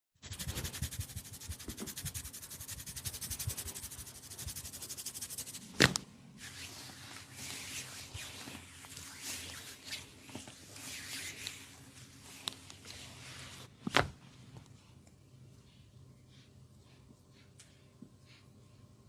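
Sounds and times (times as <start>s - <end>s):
hands rubbing skin: 0.3s - 5.7s.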